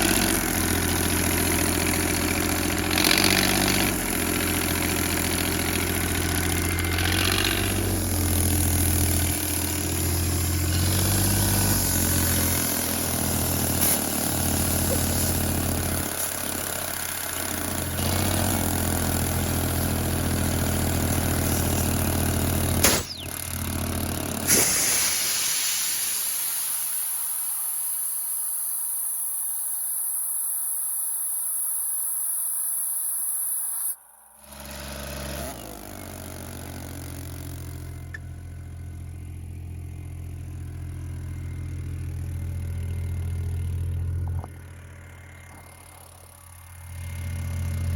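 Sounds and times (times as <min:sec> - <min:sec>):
air compressor engine running: 0:00.0 - 0:30.4, 0:34.4 - 0:47.9
steady air hiss: 0:24.5 - 0:34.0.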